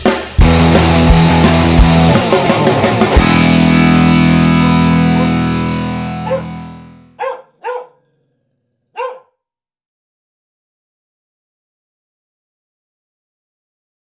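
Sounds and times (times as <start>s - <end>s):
distorted electric guitar chord: 0.4s - 7.2s
dog barking: 5.2s - 5.4s, 6.2s - 6.6s, 7.2s - 9.4s.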